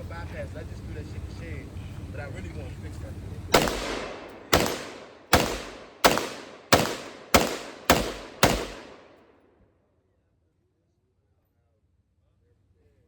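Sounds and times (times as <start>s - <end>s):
gunshots with ringing echo: 3.6s - 9.3s.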